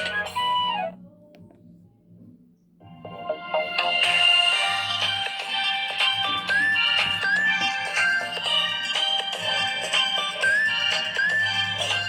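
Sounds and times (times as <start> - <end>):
synthesized ringtone melody: 0.0 - 1.0, 3.1 - 12.0.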